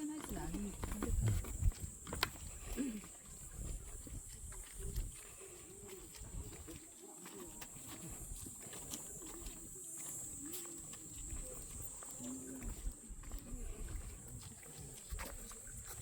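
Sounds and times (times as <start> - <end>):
wind rumbling on microphone: 0.3 - 6.7, 12.6 - 16.0.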